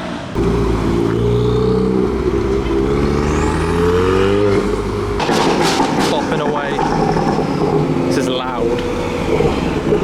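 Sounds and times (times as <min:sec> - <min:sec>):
car engine revving: 0:00.0 - 0:10.0
sharp engine cracks: 0:05.1 - 0:09.0.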